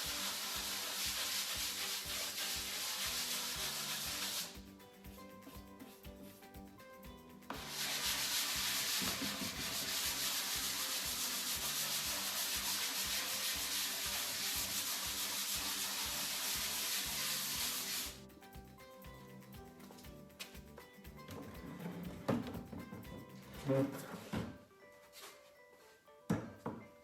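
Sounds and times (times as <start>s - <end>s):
sandpaper sanding wood: 0.0s - 5.2s, 7.5s - 18.2s
quiet background music: 0.0s - 27.0s.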